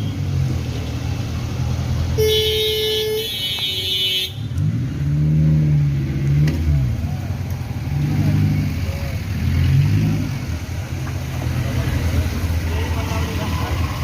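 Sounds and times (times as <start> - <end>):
vehicle engines revving: 0.0 - 14.0
car horn: 2.1 - 4.6.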